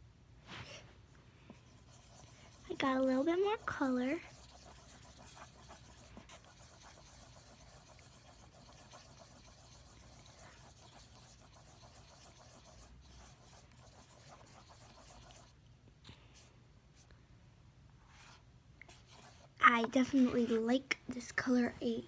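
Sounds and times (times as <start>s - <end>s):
pencil rubbing in soft soap: 1.5s - 15.6s, 18.1s - 20.7s.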